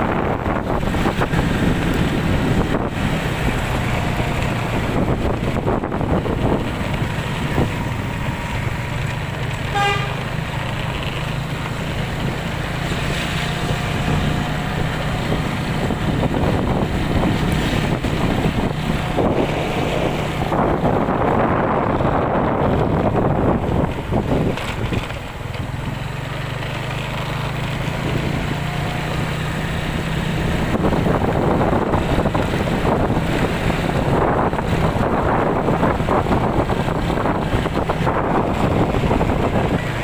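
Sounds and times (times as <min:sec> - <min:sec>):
wind noise: 0:00.0 - 0:26.0, 0:27.4 - 0:40.0
low engine hum: 0:00.0 - 0:40.0
horn toot: 0:09.6 - 0:10.3.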